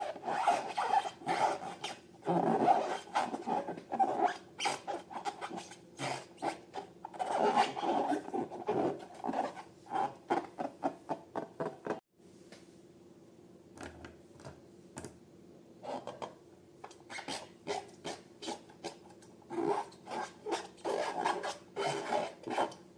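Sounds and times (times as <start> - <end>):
balloons squeaking: 0.1 - 10.2, 19.5 - 22.7.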